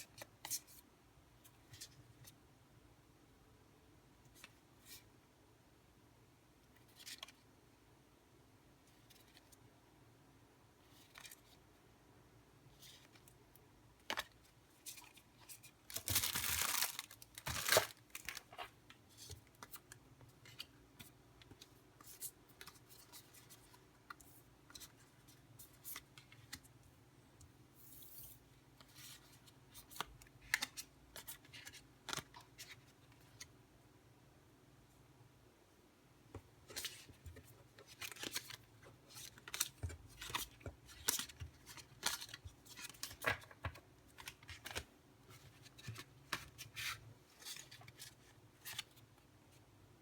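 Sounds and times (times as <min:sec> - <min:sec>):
wrapping rustling and crinkling: 0:14.8 - 0:18.7
packaging ripping: 0:15.9 - 0:18.4.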